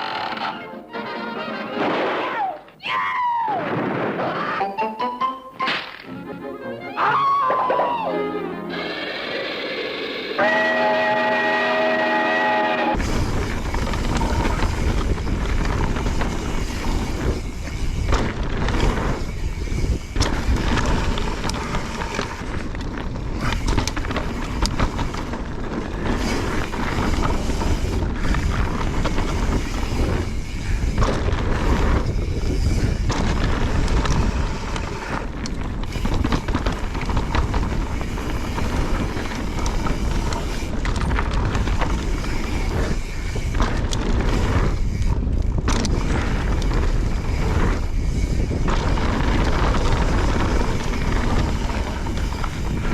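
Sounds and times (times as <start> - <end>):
bike tyre roar on dirt: 8.8 - 52.9
wind rumble on camera: 12.9 - 52.9
bike rattling and knocking: 13.0 - 52.9.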